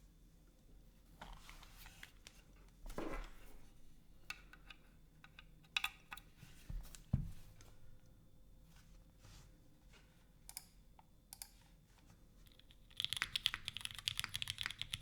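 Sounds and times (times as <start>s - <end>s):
mechanical keyboard clicks and knocks: 12.9s - 15.0s.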